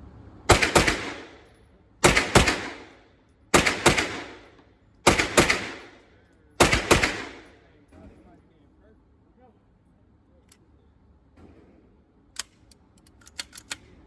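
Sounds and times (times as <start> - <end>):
gunshots with echo: 0.5 - 6.0, 6.6 - 7.6.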